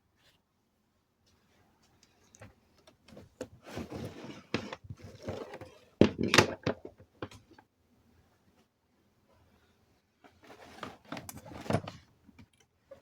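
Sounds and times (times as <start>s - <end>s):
rustling: 3.1s - 5.8s.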